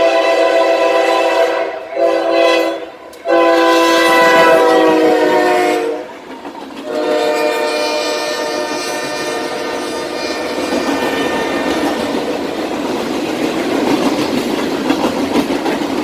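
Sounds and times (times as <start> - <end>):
locomotive air horn blasts: 0.0 - 6.2, 6.8 - 12.0.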